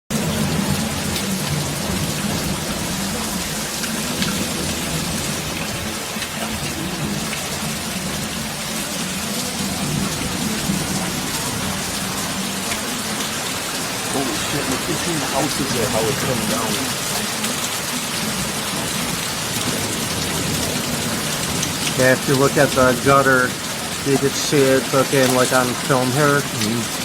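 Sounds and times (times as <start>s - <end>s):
heavy rain pouring: 0.1s - 27.0s.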